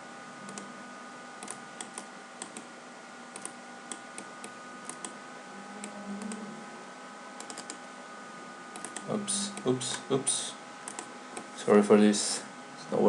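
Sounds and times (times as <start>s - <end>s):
steady electrical hum: 0.0s - 13.0s
computer mouse clicks: 0.5s - 0.7s, 1.4s - 2.7s, 3.3s - 5.2s, 7.4s - 7.8s, 8.7s - 10.0s, 10.8s - 11.5s.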